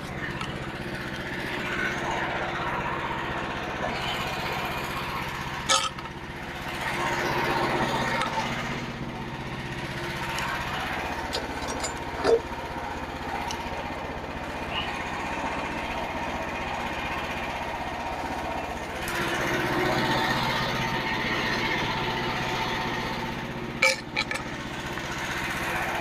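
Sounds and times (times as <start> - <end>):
band sawmill cutting log: 0.0 - 16.9.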